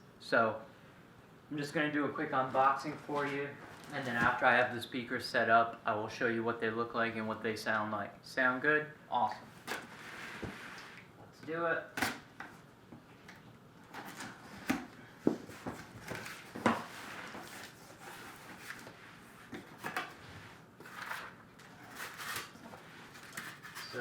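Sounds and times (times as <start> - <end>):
cardboard scraping and rustling: 13.9 - 24.0.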